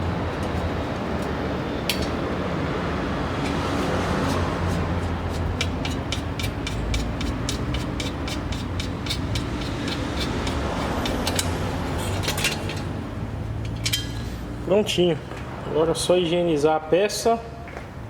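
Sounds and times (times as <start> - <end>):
low workshop hum: 0.0 - 16.5
rapid tool clicking: 5.3 - 11.6.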